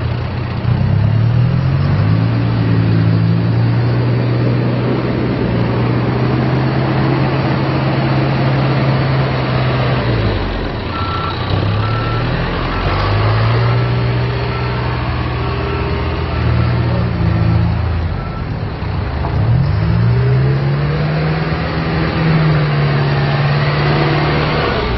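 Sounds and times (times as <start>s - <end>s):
diesel engine running: 0.0s - 24.9s
backup alarm beeping: 10.9s - 13.2s.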